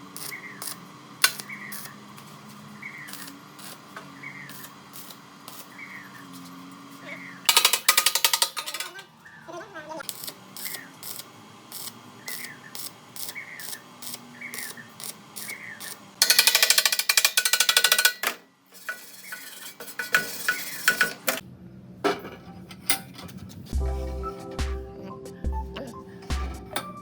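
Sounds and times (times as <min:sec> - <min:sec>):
mechanical clicking: 0:07.5 - 0:09.0.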